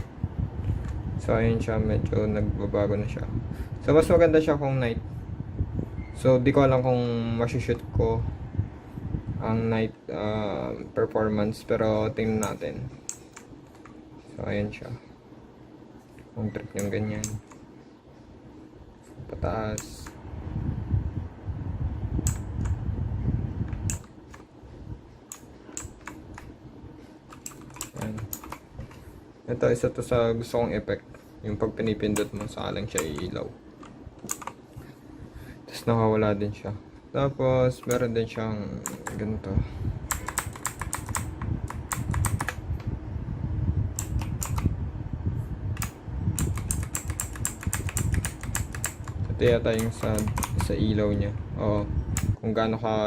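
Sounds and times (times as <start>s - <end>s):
steady low hum: 0.0s - 53.0s
mechanical keyboard keys clicking: 27.3s - 28.6s, 32.0s - 33.3s, 34.2s - 34.6s, 38.8s - 39.2s, 40.1s - 42.6s, 44.0s - 44.7s, 45.8s - 50.7s.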